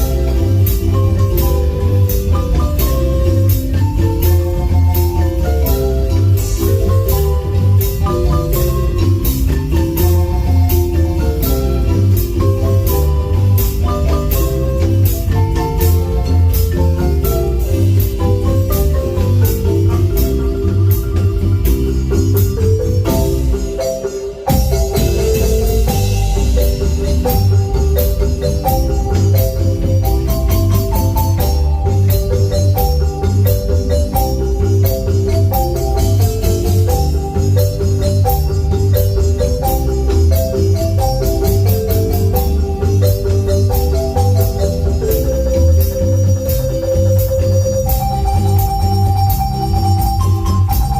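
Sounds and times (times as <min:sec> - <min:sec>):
low bass and drum beat: 0:00.0 - 0:50.9
marimba notes: 0:00.0 - 0:50.9.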